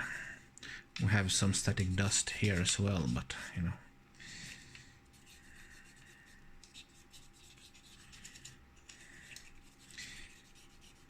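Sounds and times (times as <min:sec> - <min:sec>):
cotton swab rubbing: 0:04.6 - 0:11.0.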